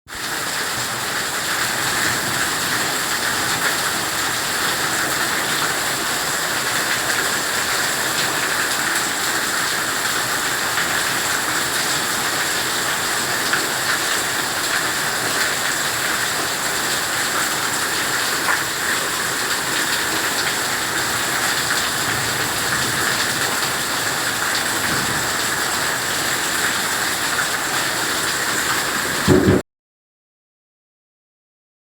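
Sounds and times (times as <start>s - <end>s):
heavy rain pouring: 0.1s - 29.6s
brief bump: 29.2s - 29.6s.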